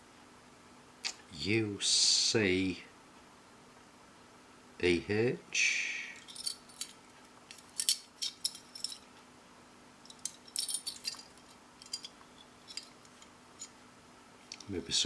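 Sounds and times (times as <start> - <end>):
padlock and keys clinking: 6.2 - 9.1, 10.1 - 13.7.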